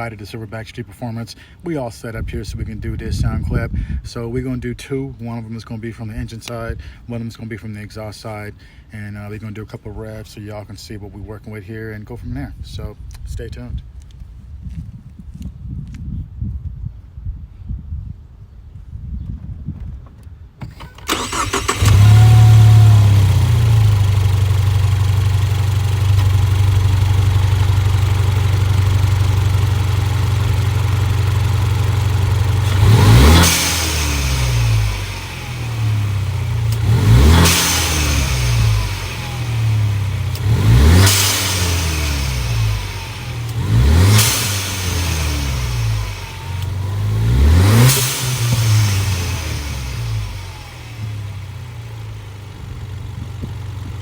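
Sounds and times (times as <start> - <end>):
car engine revving: 20.6 - 54.0
car engine starting and idling: 20.6 - 54.0.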